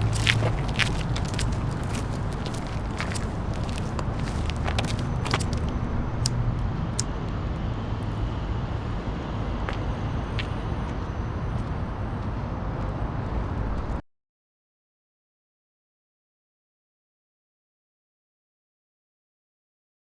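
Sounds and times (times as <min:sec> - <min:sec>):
low rumble of street traffic: 0:00.0 - 0:14.0.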